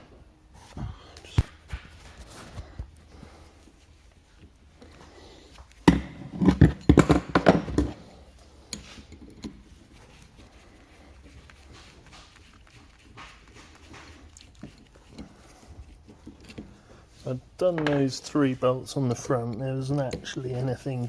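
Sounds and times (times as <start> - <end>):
tools and parts clattering: 5.8 - 9.9.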